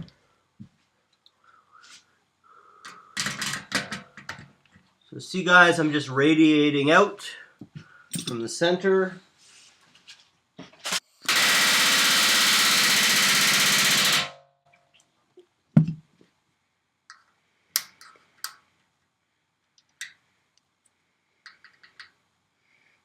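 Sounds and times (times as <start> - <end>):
tools and metal parts clicking: 8.1 - 8.4, 21.5 - 22.2
pneumatic rivet gun rattling: 10.8 - 14.4.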